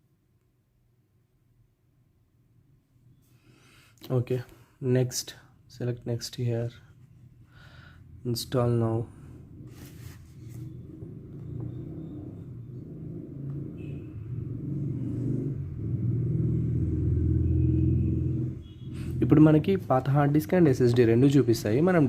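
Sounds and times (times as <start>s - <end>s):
low engine rumble: 8.2s - 22.0s.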